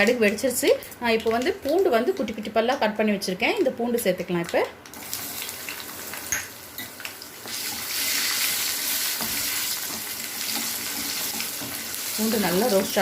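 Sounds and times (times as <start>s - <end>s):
garlic sizzling in hot oil: 4.4s - 13.0s.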